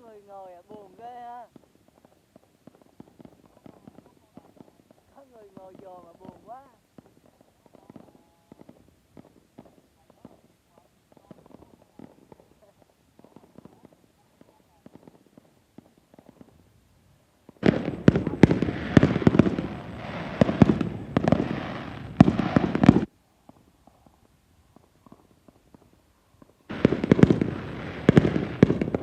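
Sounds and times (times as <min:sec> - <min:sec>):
firework bangs: 0:00.0 - 0:16.8, 0:17.4 - 0:29.0
fireworks crackling: 0:00.0 - 0:29.0.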